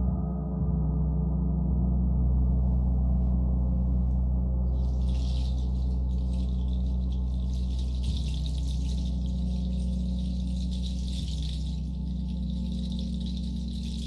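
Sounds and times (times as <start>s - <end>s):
high shimmering sound: 4.8s - 14.0s.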